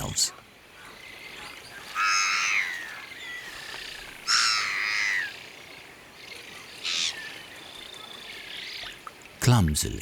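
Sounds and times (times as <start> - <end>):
bird begging calls: 1.8 - 5.3.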